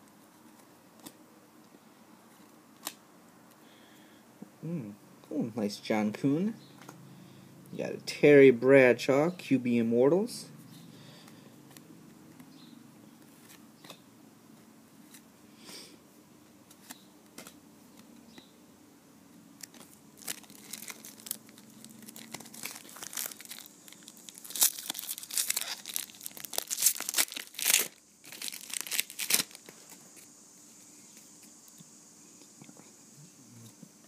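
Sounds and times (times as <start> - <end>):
wrapper crinkling and tearing: 19.6 - 29.7.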